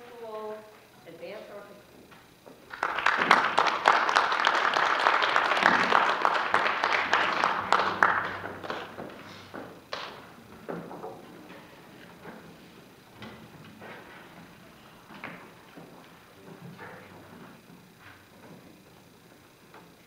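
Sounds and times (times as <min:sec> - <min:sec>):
audience applause: 0:02.7 - 0:10.3.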